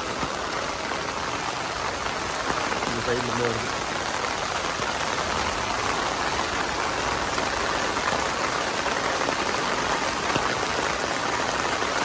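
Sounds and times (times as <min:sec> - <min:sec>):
floodwater running: 0:00.0 - 0:12.0
heavy rain falling: 0:00.0 - 0:12.0.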